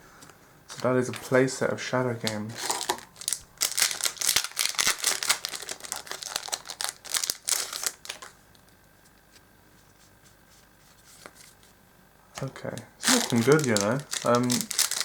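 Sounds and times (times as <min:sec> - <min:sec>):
foil wrappers crinkling: 0:00.7 - 0:01.4, 0:02.2 - 0:08.6, 0:13.0 - 0:15.0
cards being flicked through: 0:13.1 - 0:14.7.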